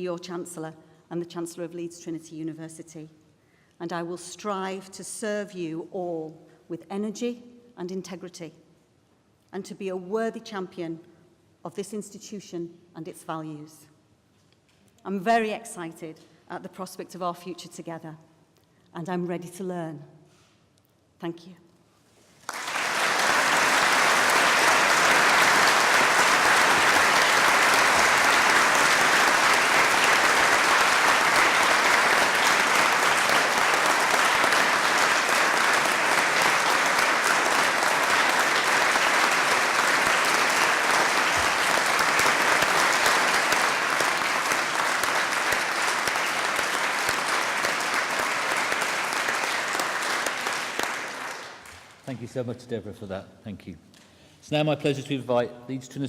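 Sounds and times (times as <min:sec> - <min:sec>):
audience applauding: 0:22.4 - 0:51.9.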